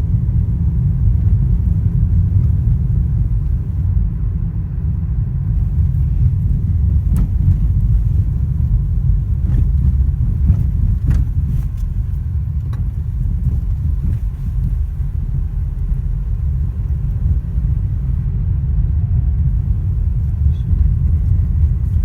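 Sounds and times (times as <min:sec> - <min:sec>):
car driving low rumble: 0:00.0 - 0:22.0
suspension knocking: 0:05.6 - 0:18.2.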